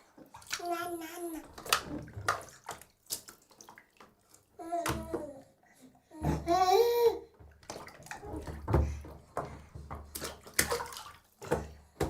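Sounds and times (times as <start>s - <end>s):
bath water splashing: 0.0s - 12.0s
baby vocalizing: 0.6s - 1.6s.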